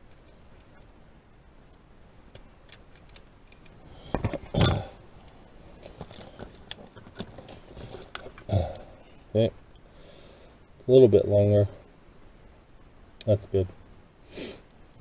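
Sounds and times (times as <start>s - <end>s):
hand tools clicking and rustling: 2.7s - 8.5s.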